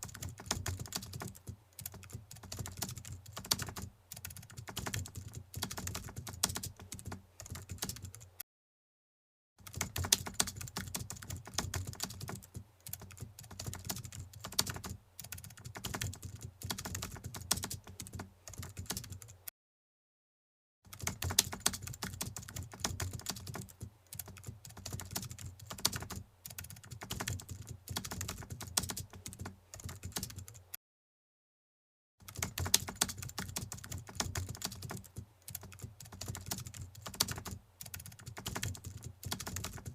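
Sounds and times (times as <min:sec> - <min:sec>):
keyboard typing clicks: 0:09.6 - 0:19.3, 0:32.3 - 0:39.9.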